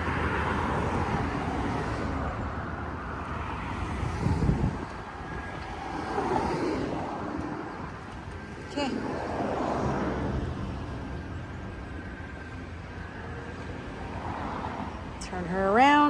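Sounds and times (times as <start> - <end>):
wind on microphone: 0.0 - 12.7.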